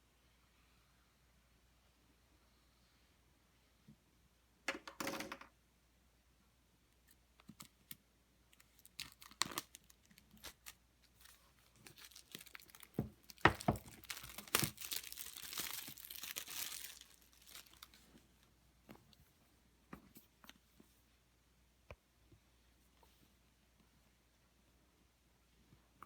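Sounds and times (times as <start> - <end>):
packaging tearing: 8.6 - 18.0.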